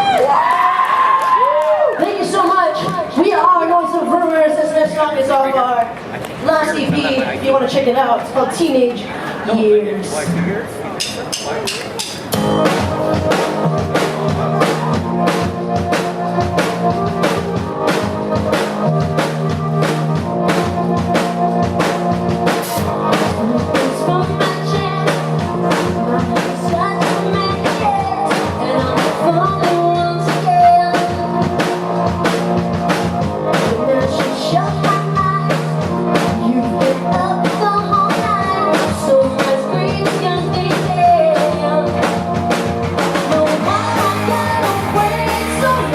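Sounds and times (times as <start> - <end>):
drum kit beat: 11.0 - 45.9
bass and guitar notes: 11.5 - 45.9.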